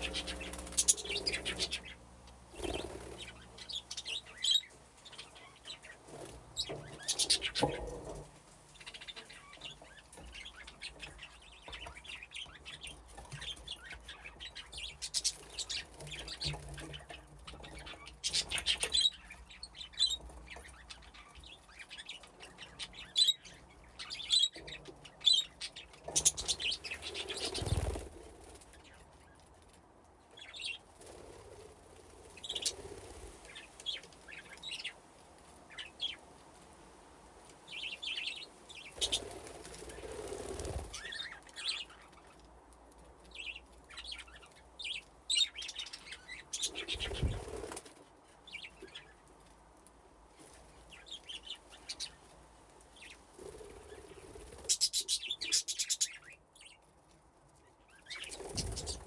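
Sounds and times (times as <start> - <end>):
wings flapping: 0.0 - 1.8, 2.5 - 3.5, 26.2 - 28.8, 39.0 - 41.2, 46.7 - 48.0, 58.2 - 59.0
budgerigars chirping and chattering: 0.0 - 8.1, 8.8 - 29.0, 32.4 - 35.0, 37.7 - 42.3, 43.3 - 47.8, 53.0 - 56.8, 57.9 - 59.0.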